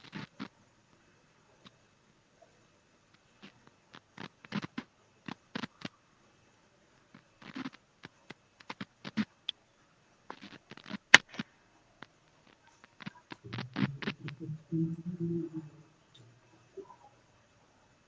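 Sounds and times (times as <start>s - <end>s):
light taps and scratches: 10.3s - 17.1s
faint low murmur: 11.4s - 18.0s.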